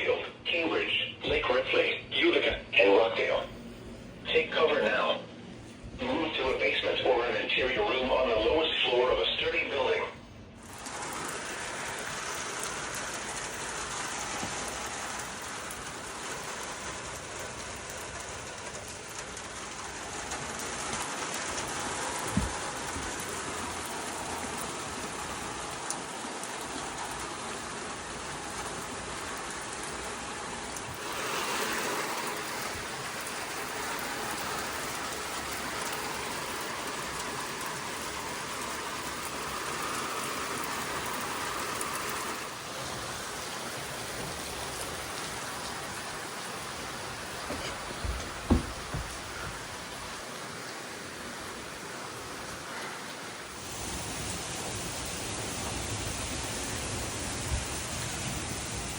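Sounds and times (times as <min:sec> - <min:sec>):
steady rain hiss: 0:00.0 - 0:58.9
short knock: 0:47.5 - 0:49.6.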